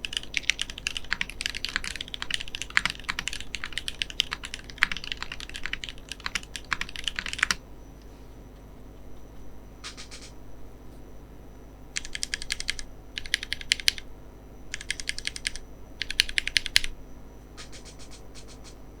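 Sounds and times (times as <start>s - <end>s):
typing on a mechanical keyboard: 0.0s - 7.6s, 12.0s - 14.0s, 14.7s - 16.9s, 17.6s - 18.8s.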